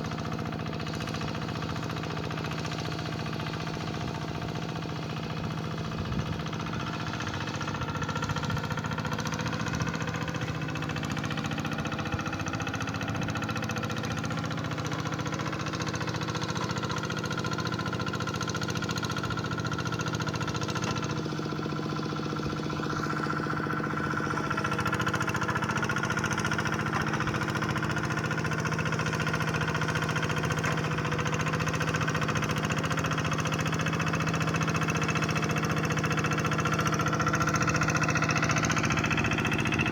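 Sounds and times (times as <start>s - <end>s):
hand tractor engine running: 0.0s - 39.9s.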